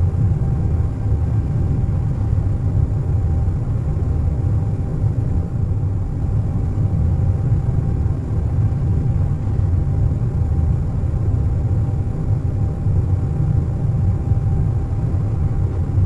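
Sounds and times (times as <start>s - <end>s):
airliner cabin rumble: 0.0s - 16.0s.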